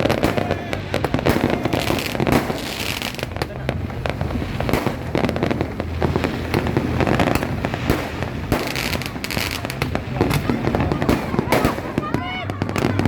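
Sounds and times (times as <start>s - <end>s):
fireworks popping and banging: 0.0s - 13.0s
low rumble: 0.0s - 13.0s.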